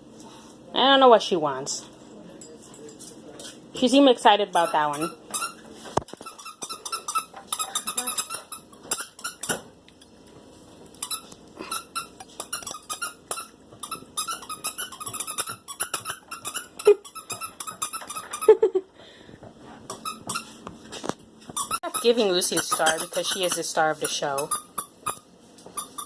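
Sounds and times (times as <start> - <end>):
dog chewing squeaky toy: 4.5 - 10.2, 10.9 - 18.5, 19.9 - 20.6, 21.2 - 26.0.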